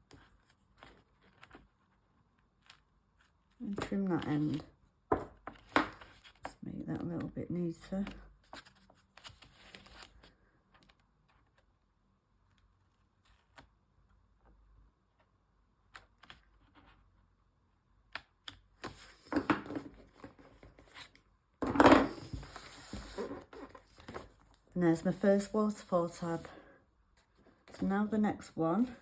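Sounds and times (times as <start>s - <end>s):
paper rustling: 22.1s - 26.5s.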